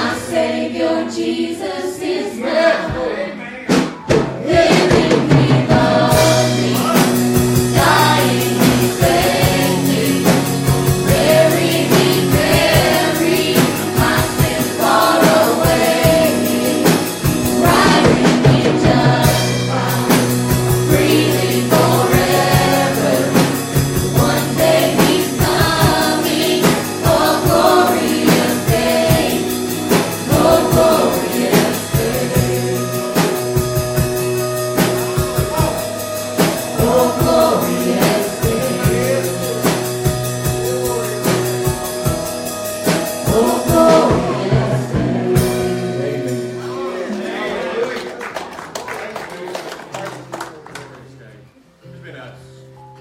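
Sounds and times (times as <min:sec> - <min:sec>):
congregation singing gospel song: 0:00.0 - 0:48.6
instrumental backing with beat: 0:02.0 - 0:46.7.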